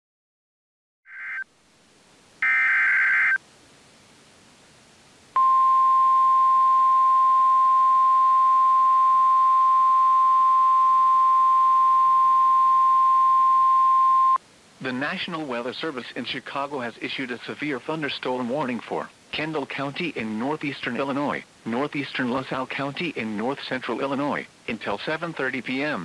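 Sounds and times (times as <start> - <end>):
high warning alarm tone: 2.4 - 3.4, 5.4 - 14.4.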